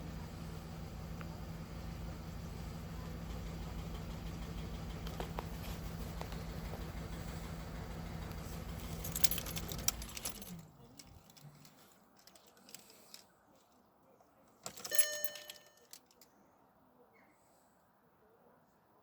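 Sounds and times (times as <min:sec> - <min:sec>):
car engine idling with misfire: 0:00.0 - 0:11.2
keys jangling: 0:08.8 - 0:13.2, 0:14.6 - 0:16.3.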